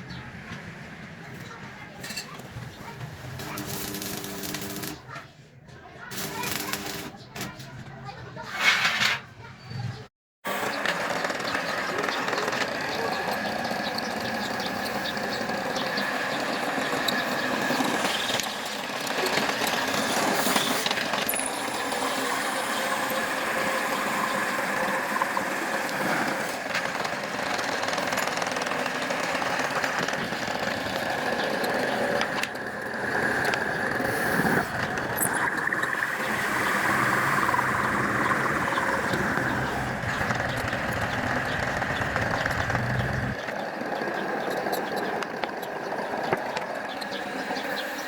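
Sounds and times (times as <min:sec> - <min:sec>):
machine high whine: 0:10.5 - 0:48.0.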